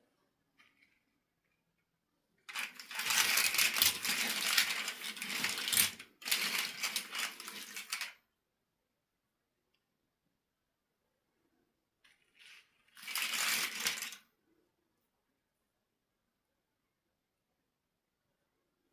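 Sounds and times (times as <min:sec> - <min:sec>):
small hard pieces clattering: 0:02.5 - 0:08.2, 0:12.1 - 0:14.2.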